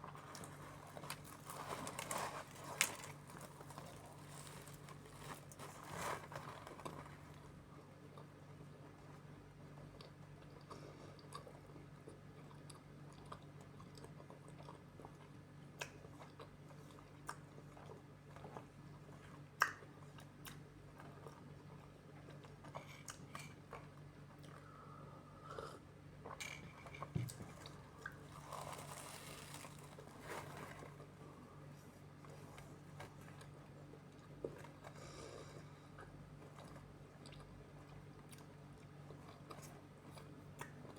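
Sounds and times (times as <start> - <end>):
person chewing food: 0.0 - 40.9
crisp crunches: 0.1 - 7.5, 28.0 - 31.2.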